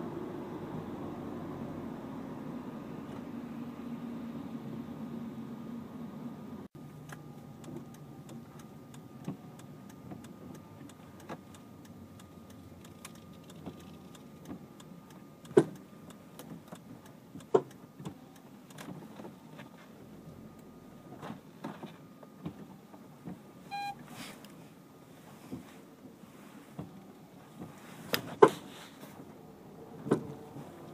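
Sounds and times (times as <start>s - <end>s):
car suspension clicks and clunks: 6.9s - 20.0s, 21.1s - 24.6s, 26.7s - 30.9s
short electronic beep: 23.7s - 24.0s.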